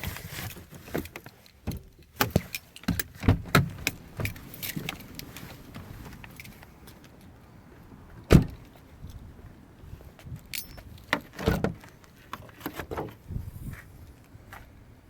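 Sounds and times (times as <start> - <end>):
light clicks and rattles: 0.6 - 7.3.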